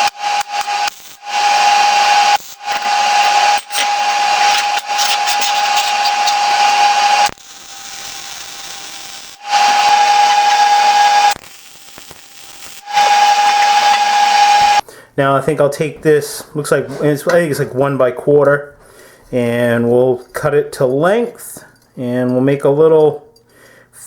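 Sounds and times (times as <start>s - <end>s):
welder hissing crackle: 0.0s - 14.8s.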